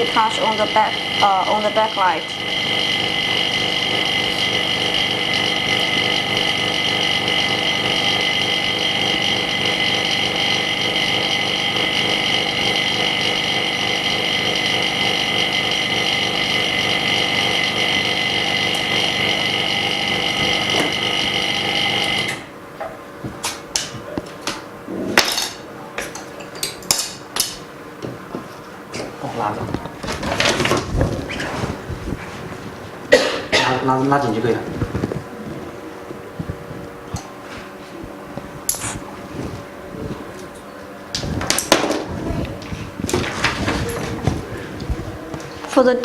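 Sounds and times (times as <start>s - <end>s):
small machine motor whining: 0.0s - 22.5s.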